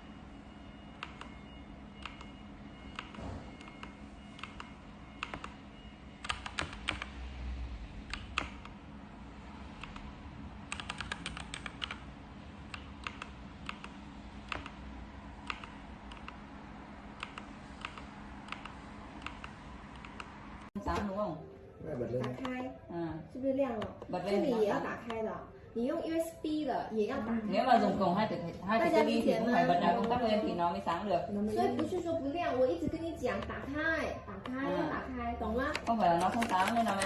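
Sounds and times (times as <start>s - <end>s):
mechanical keyboard typing: 1.0s - 1.4s, 2.0s - 2.3s, 2.9s - 5.6s, 6.2s - 7.2s, 8.0s - 8.8s, 10.7s - 14.8s, 15.4s - 16.4s, 17.2s - 20.4s, 35.6s - 37.0s.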